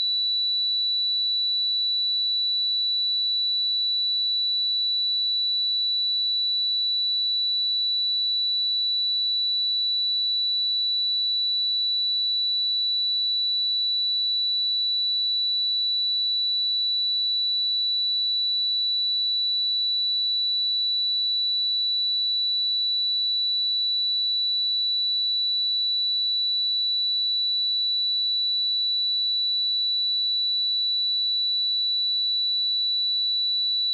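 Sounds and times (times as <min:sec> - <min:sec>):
sine-wave test tone: 0:00.0 - 0:33.9.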